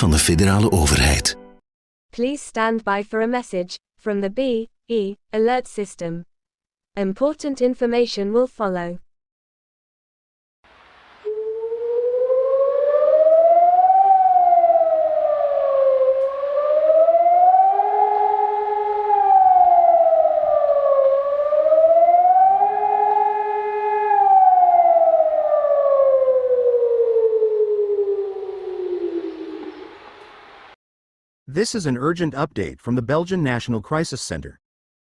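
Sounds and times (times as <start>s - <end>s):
siren wailing: 11.2s - 30.8s.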